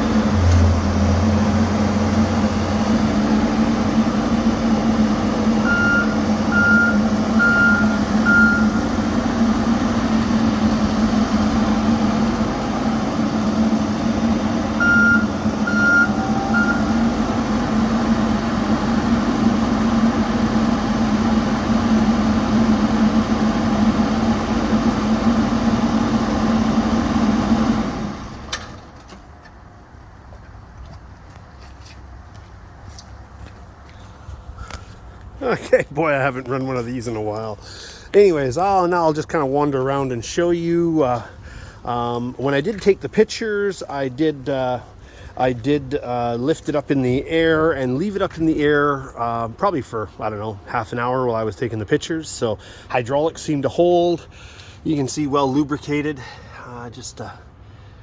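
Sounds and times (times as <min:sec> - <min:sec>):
diesel engine running: 0:00.0 - 0:58.0
reversing alarm beeps: 0:05.6 - 0:08.9, 0:14.8 - 0:17.1.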